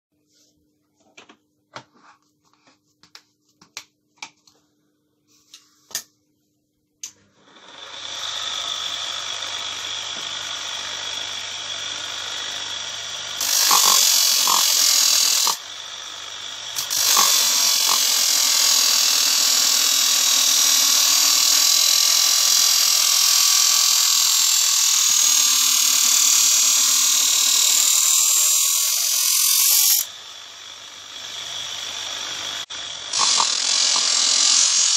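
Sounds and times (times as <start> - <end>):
sharpening machine running: 7.4 - 34.9
knife grinding on sharpening wheel: 13.4 - 15.6, 16.7 - 22.3, 23.2 - 30.1, 31.2 - 34.9.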